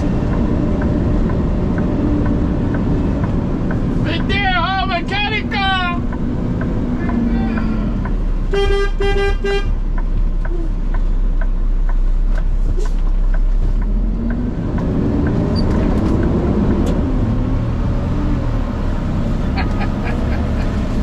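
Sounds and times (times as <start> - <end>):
diesel truck engine drone: 0.0 - 21.0
steady ticking: 0.0 - 21.0
short horn toots: 8.5 - 9.7.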